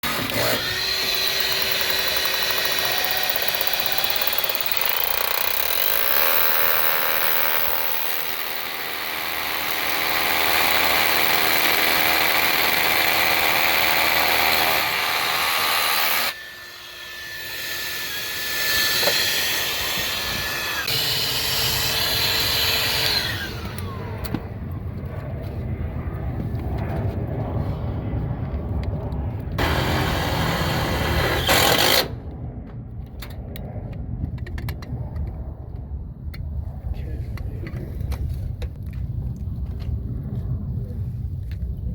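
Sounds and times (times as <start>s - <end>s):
power drill whining: 0.0s - 24.4s, 29.6s - 32.1s
fast rattling hammering: 0.4s - 16.3s.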